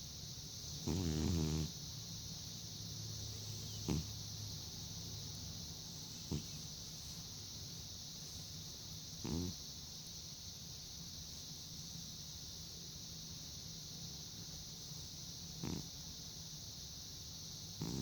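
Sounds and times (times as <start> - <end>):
faint steady hiss: 0.0 - 18.0
cat snoring: 0.8 - 1.8, 3.4 - 4.2, 6.1 - 7.1, 9.2 - 9.6, 15.6 - 16.0, 17.8 - 18.0.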